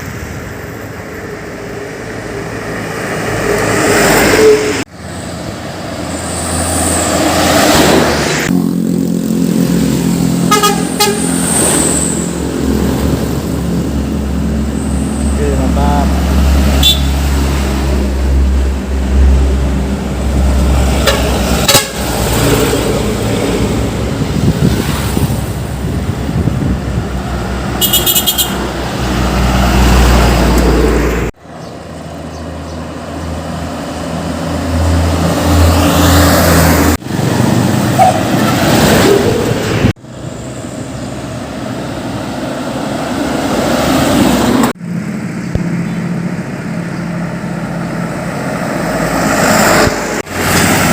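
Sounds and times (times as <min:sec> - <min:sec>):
diesel trucks running: 0:00.0 - 0:50.9
traffic noise: 0:00.0 - 0:50.9
short high horn toot: 0:27.8 - 0:28.7.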